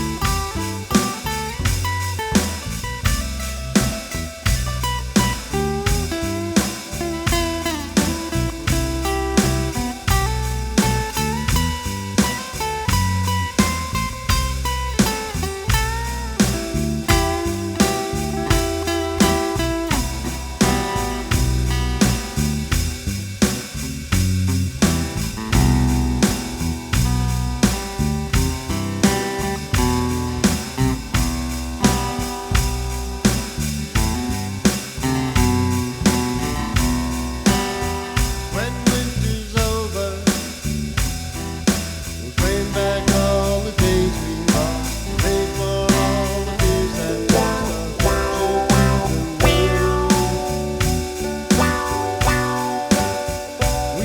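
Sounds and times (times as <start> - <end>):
band playing a song: 0.0 - 23.8, 24.8 - 54.0.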